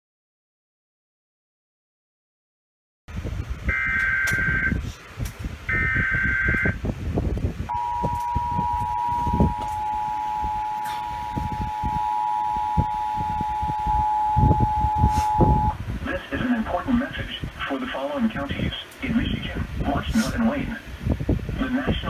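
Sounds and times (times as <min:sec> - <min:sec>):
two-tone attention signal: 0:03.7 - 0:04.8, 0:05.7 - 0:06.8, 0:07.7 - 0:15.8.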